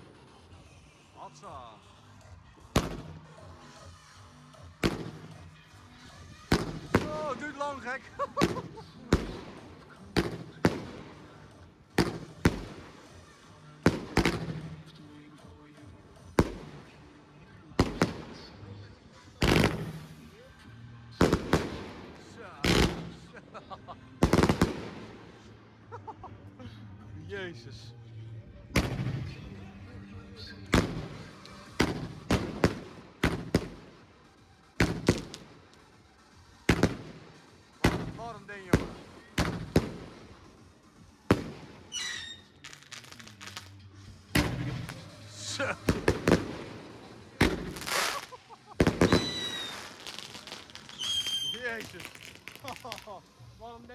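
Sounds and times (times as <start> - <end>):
firework bangs with echo: 2.7 - 3.2, 4.8 - 5.5, 6.5 - 13.1, 13.8 - 15.0, 16.2 - 17.0, 17.7 - 18.5, 19.4 - 20.2, 21.2 - 23.3, 24.2 - 25.4, 28.7 - 29.4, 30.7 - 34.1, 34.8 - 35.9, 36.6 - 40.6, 41.2 - 43.7, 44.3 - 53.0.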